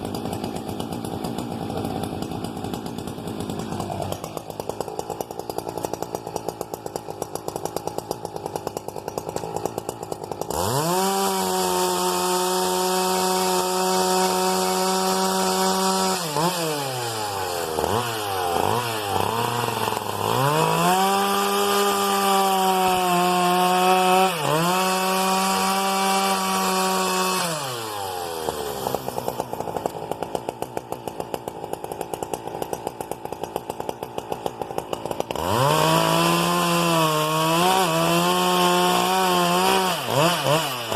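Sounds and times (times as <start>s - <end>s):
chainsaw idling and revving: 0.0s - 40.9s.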